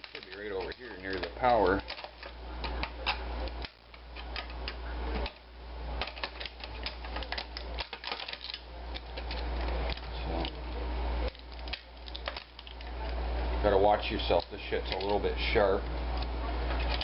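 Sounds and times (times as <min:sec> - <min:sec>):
plastic parts clicking and rattling: 0:00.0 - 0:05.4, 0:06.0 - 0:10.6, 0:11.2 - 0:12.9, 0:14.0 - 0:15.3, 0:16.7 - 0:17.0
low steady hum: 0:00.0 - 0:17.0.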